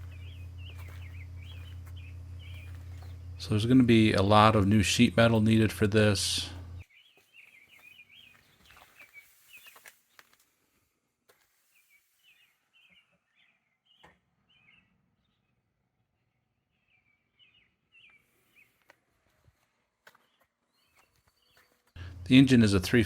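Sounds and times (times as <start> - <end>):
faint songbird chirping: 0.0 - 10.8, 11.4 - 23.0.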